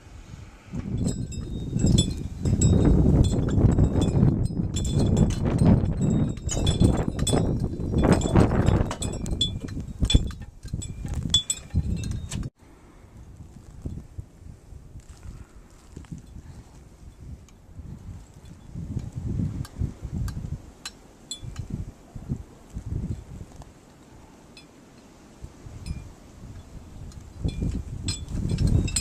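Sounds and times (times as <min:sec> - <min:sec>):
blizzard wind gusting: 0:00.0 - 0:29.0
high metallic ringing tones: 0:00.9 - 0:12.5.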